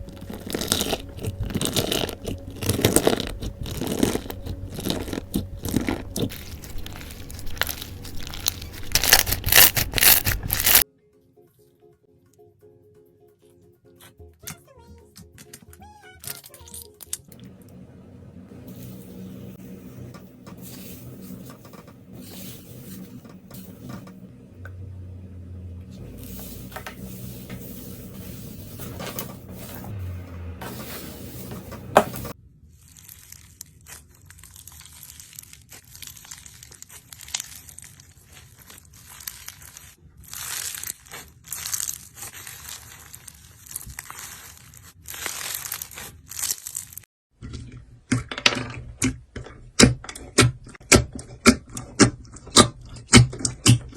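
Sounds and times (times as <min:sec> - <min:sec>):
slime crackling and popping: 0:00.0 - 0:10.8, 0:32.0 - 0:47.1.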